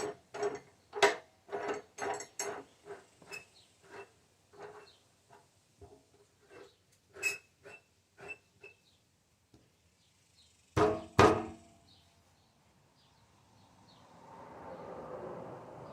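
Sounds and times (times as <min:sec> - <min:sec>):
loud sharp clunks with ring: 0:10.8 - 0:11.7.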